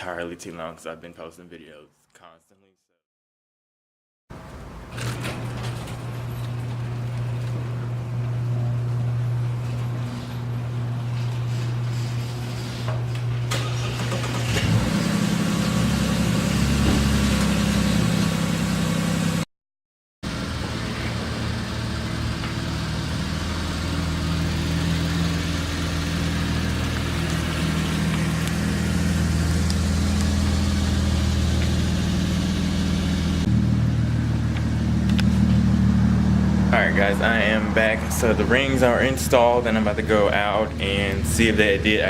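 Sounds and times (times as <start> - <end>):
car engine running: 20.2 - 42.0.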